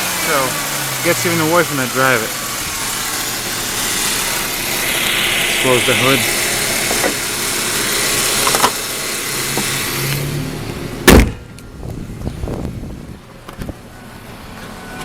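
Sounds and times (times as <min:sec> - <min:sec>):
car engine idling: 0:00.0 - 0:14.8
car hood slammed shut: 0:08.4 - 0:08.8, 0:11.0 - 0:11.5.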